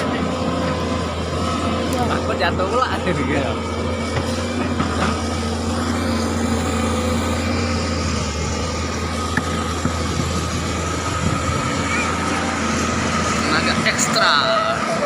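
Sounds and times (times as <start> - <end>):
excavator diesel engine droning: 0.0 - 15.0
steady pitched whine: 0.0 - 15.0.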